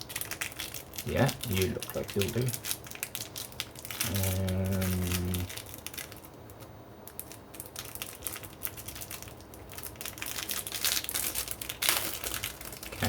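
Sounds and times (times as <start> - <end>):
plastic crinkling and rustling: 0.0 - 13.0.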